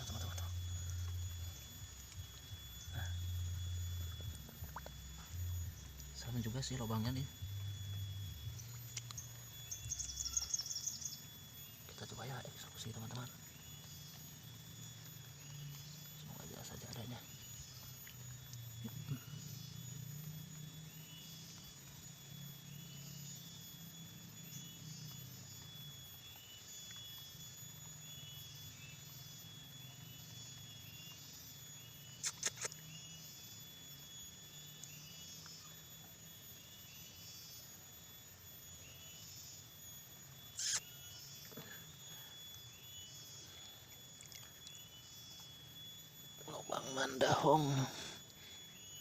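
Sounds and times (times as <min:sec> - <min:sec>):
high continuous wildlife tones: 0:00.0 - 0:49.0
sharp clicks: 0:32.2 - 0:32.8
short repeating chirp: 0:40.5 - 0:41.8.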